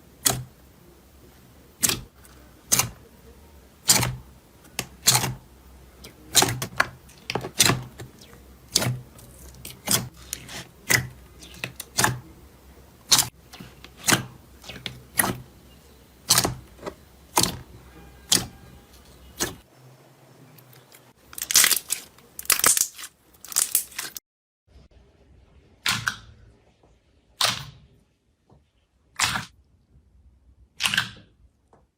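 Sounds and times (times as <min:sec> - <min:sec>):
slime squishes: 0:01.2 - 0:03.2, 0:03.8 - 0:19.7, 0:20.6 - 0:24.2, 0:29.2 - 0:29.5.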